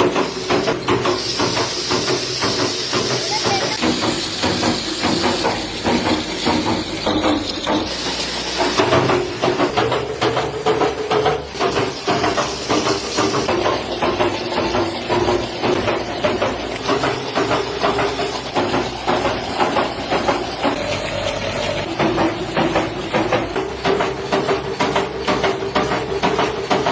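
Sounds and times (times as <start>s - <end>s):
hiss: 0.0s - 9.7s, 11.6s - 20.8s.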